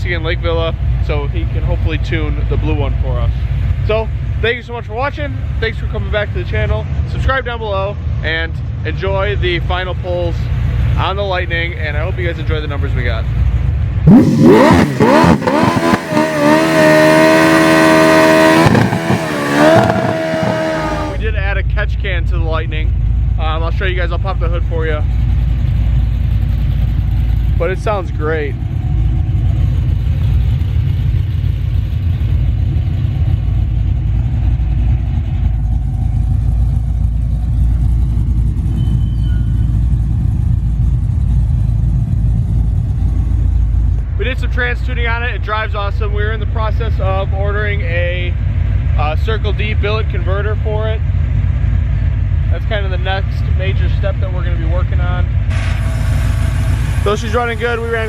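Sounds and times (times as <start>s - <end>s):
engine revving with loud exhaust: 11.7s - 21.3s, 46.6s - 58.0s
pickup engine idling roughly: 22.0s - 44.0s, 47.2s - 58.0s.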